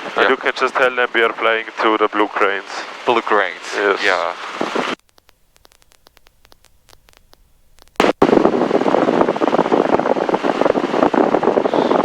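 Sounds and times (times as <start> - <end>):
radio static crackling: 0.0 - 9.5.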